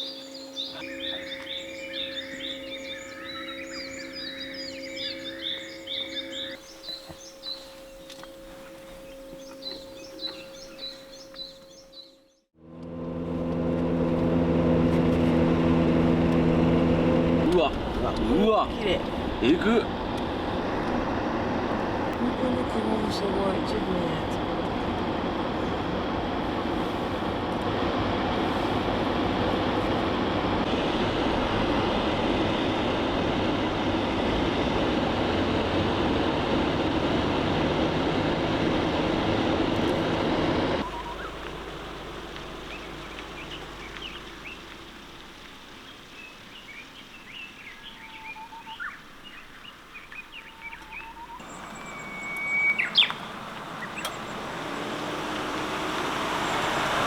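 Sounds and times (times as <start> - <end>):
birds chirping: 0.0 - 12.5, 32.2 - 57.0
steady rushing noise: 17.4 - 45.2.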